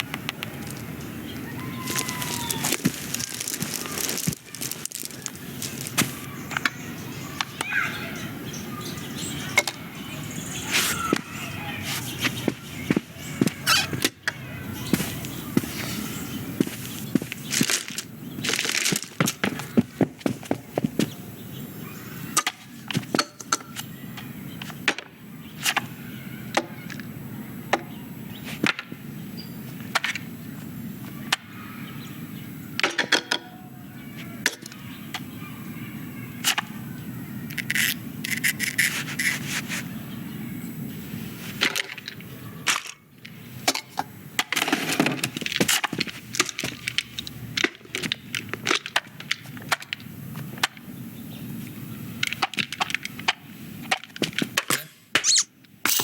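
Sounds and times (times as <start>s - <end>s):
toys clicking and knocking: 0.0s - 0.9s, 1.8s - 7.8s, 12.1s - 15.8s, 37.5s - 39.4s, 41.6s - 50.9s, 52.2s - 56.0s.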